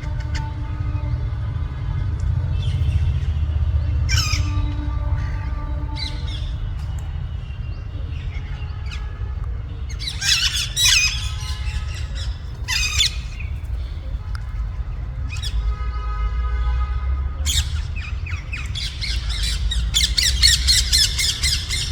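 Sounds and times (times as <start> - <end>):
parrots squawking: 4.1 - 6.6, 9.9 - 13.5, 17.5 - 21.9.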